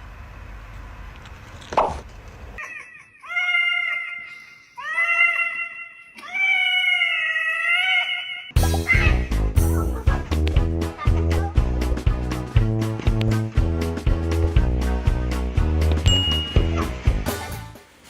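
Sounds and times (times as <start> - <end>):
cat meowing: 2.6 - 9.3.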